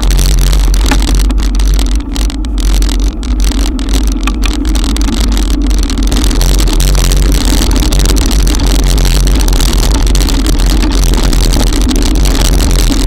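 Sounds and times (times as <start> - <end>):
rain on microphone: 0.0 - 13.0
wind buffeting microphone: 0.0 - 13.0.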